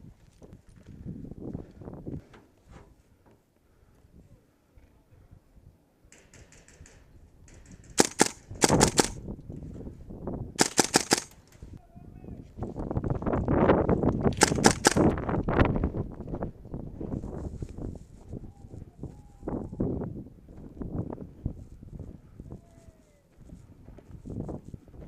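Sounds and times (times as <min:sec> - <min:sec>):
rough steady noise: 0:07.5 - 0:09.2, 0:10.6 - 0:11.5, 0:14.4 - 0:15.1
airsoft guns firing: 0:07.8 - 0:09.2, 0:10.6 - 0:11.4, 0:14.4 - 0:15.1.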